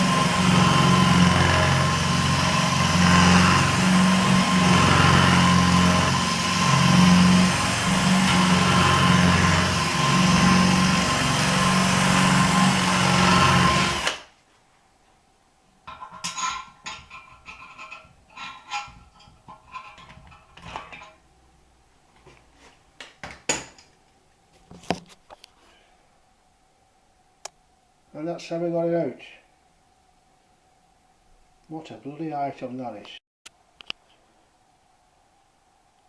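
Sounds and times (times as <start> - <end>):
power drill drilling: 0.0 - 14.3.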